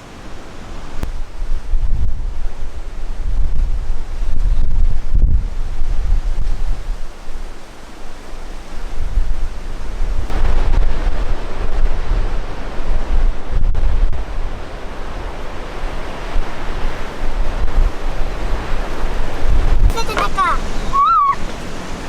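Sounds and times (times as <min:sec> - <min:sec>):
wind buffeting microphone: 0:00.0 - 0:22.0.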